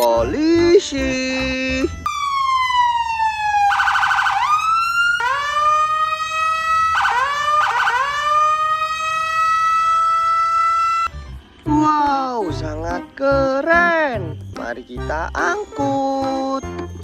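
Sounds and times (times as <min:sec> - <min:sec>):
police car siren wailing: 0:01.9 - 0:11.2.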